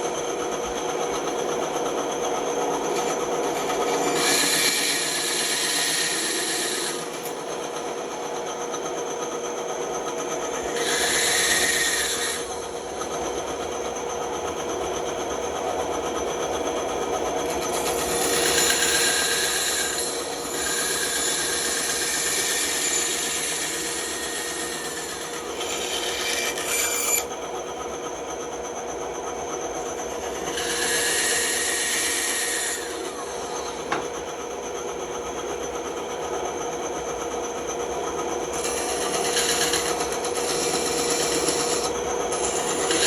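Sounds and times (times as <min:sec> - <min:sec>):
bandsaw cutting wood: 0:03.9 - 0:07.4, 0:10.6 - 0:12.5, 0:17.6 - 0:27.3, 0:30.4 - 0:33.8, 0:38.5 - 0:43.0.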